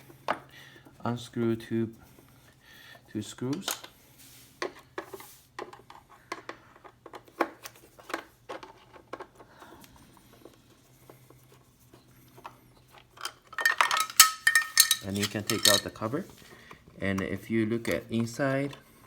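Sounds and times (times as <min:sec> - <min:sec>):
metal clinks clattering: 0:13.5 - 0:16.0.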